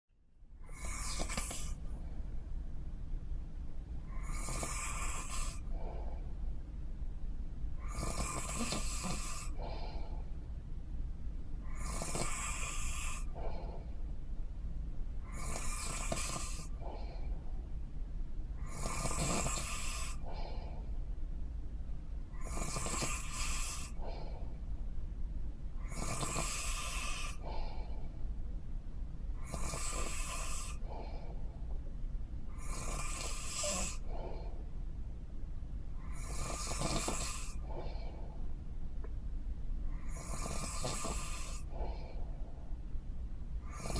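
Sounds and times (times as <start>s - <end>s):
steady low hum: 0.1s - 43.9s
person snoring: 0.7s - 1.8s, 4.1s - 6.1s, 7.8s - 10.0s, 11.7s - 13.8s, 15.3s - 17.3s, 18.6s - 20.6s, 22.4s - 24.2s, 25.8s - 27.9s, 29.4s - 31.4s, 32.6s - 34.5s, 36.0s - 38.3s, 40.0s - 42.2s, 43.6s - 43.9s.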